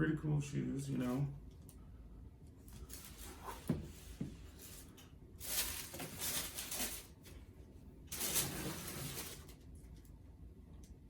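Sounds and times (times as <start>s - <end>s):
packaging rustling: 4.5s - 7.4s, 8.1s - 9.6s.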